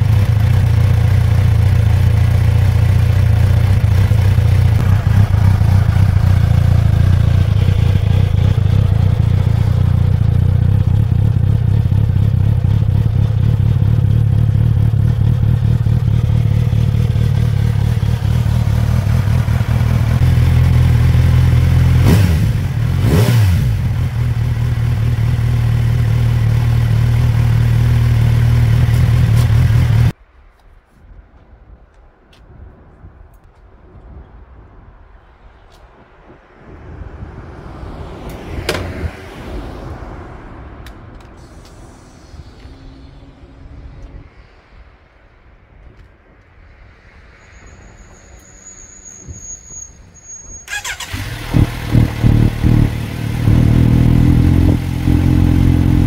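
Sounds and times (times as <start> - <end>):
loud motorcycle engine idling: 0.0 - 20.6
engine revving: 3.1 - 30.1, 50.7 - 56.0.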